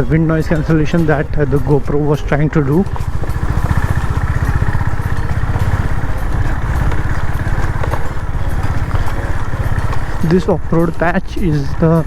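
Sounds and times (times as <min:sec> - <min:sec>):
motorcycle engine cruising: 0:00.0 - 0:12.0
wind and road noise: 0:00.0 - 0:12.0.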